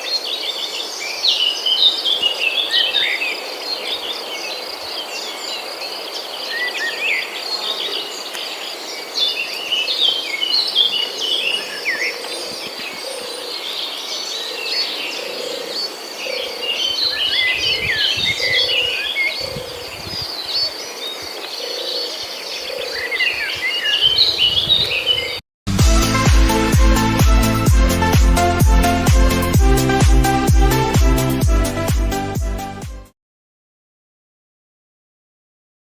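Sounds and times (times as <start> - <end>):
birds chirping and calling: 0.0 - 25.4.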